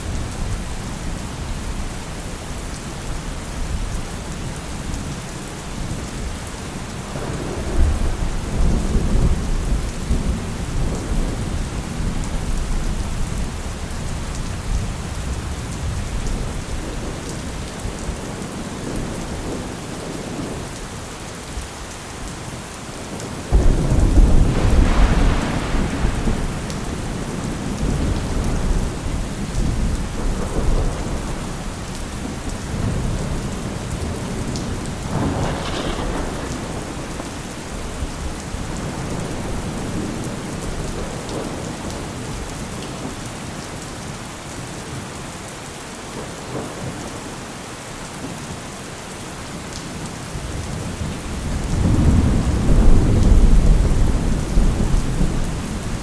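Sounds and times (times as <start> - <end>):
steady rain: 0.0 - 56.0
thunder rumbling: 7.1 - 20.7, 23.4 - 42.6, 50.3 - 56.0.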